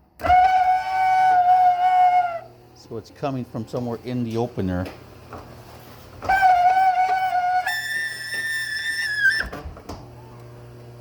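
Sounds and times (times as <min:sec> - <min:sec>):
garage door opener squealing: 0:00.2 - 0:02.5, 0:06.2 - 0:10.4.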